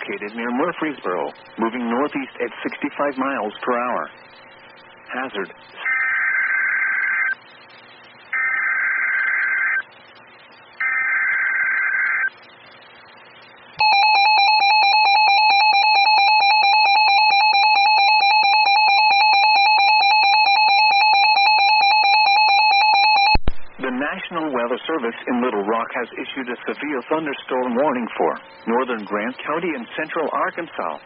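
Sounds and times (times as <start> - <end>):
screeching digital data tones: 5.1 - 9.9, 10.5 - 12.5
steady alert tone: 13.8 - 23.3.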